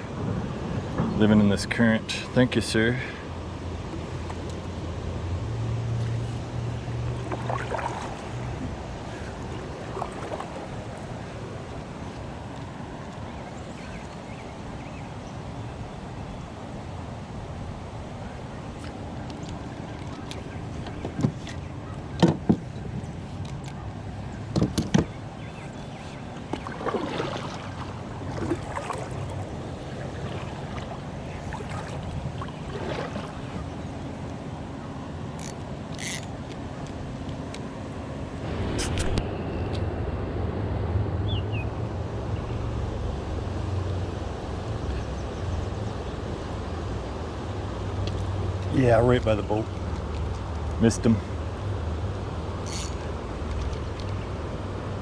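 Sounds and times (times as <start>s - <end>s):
sharp knocks on boat: 20.9s - 21.6s, 22.2s - 23.0s, 24.5s - 25.2s, 26.5s - 27.6s.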